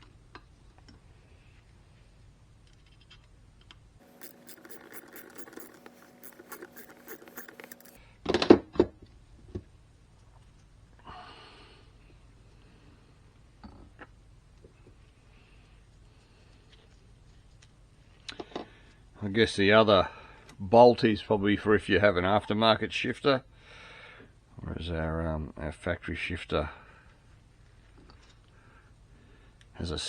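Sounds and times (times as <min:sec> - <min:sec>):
metal parts scraping: 0:04.0 - 0:08.0
quick clicking: 0:04.0 - 0:08.0.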